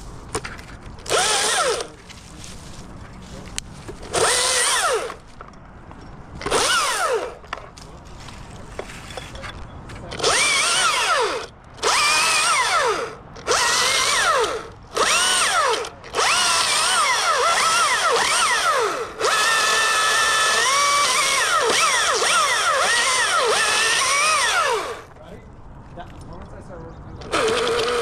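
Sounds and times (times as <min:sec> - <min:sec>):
chainsaw cutting and revving: 0:01.1 - 0:01.9, 0:04.1 - 0:05.2, 0:06.5 - 0:07.4, 0:10.2 - 0:25.1, 0:27.3 - 0:28.0.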